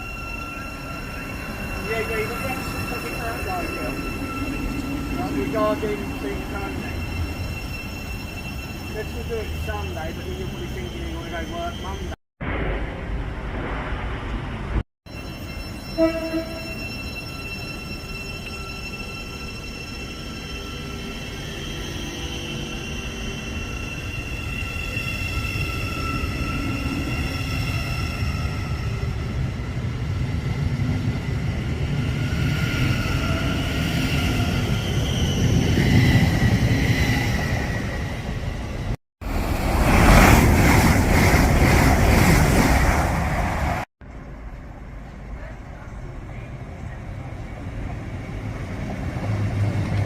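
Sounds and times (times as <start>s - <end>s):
high-pitched whining tones: 0.0s - 12.2s
train running hum and whine: 0.0s - 12.2s, 14.3s - 50.0s
train horn blast: 15.9s - 16.8s.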